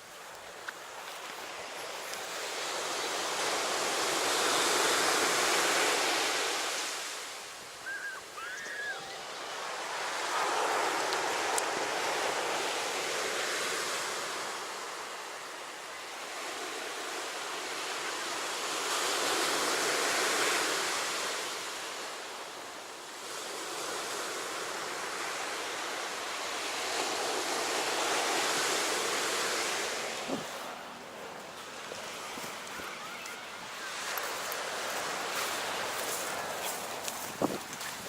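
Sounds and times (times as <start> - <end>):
sea waves breaking on shore: 0.0 - 38.0.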